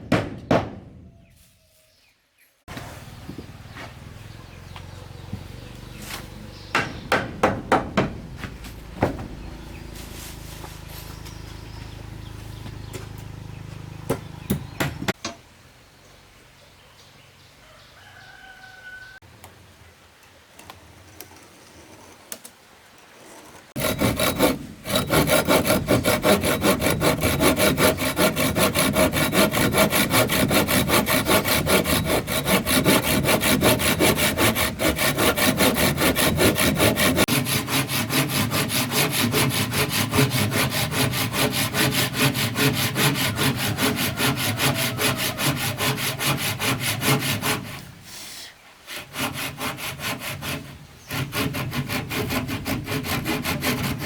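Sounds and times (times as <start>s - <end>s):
knocks: 0.0s - 1.0s, 6.7s - 9.4s
hand saw cutting wood: 23.3s - 48.2s, 48.9s - 54.0s.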